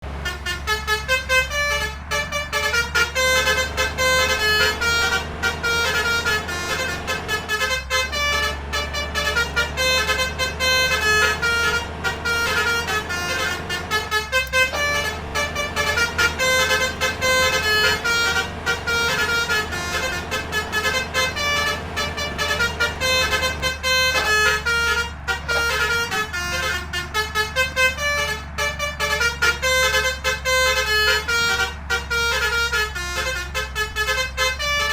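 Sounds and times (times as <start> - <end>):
low engine hum: 0.0 - 34.9
multi-tone bus horn melody: 0.0 - 34.9.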